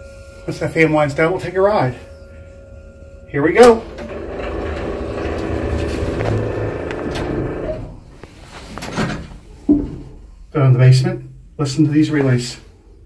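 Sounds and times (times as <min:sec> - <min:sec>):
elevator mechanical hum: 0:00.0 - 0:09.5.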